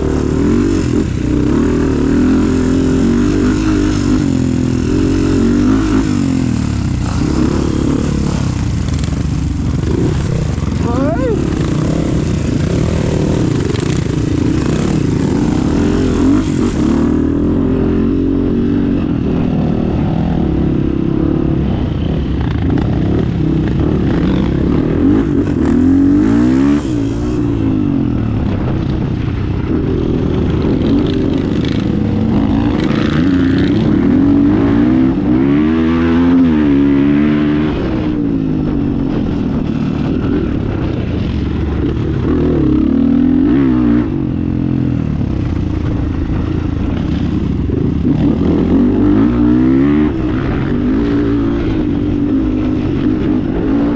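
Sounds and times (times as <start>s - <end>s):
vehicle engine revving: 0.0s - 29.0s.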